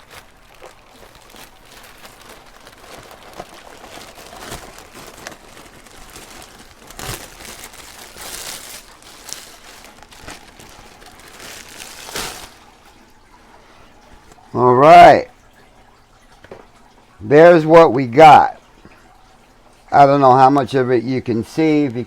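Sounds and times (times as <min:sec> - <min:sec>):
plastic packaging crinkling: 0:00.0 - 0:13.1.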